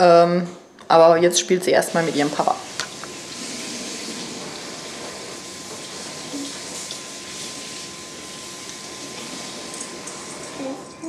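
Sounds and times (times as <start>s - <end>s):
tap running into sink: 2.7s - 5.1s.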